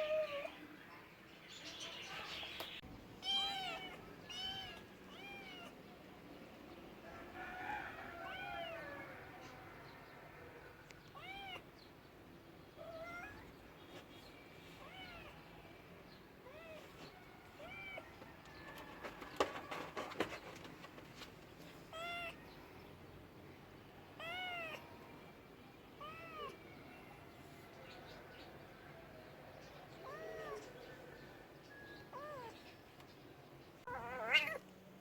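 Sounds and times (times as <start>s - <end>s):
cat meowing: 3.2s - 5.8s, 11.2s - 11.6s, 12.8s - 13.5s, 21.9s - 22.4s, 24.2s - 24.8s, 26.0s - 26.6s, 30.0s - 30.7s, 32.1s - 32.6s, 33.9s - 34.6s.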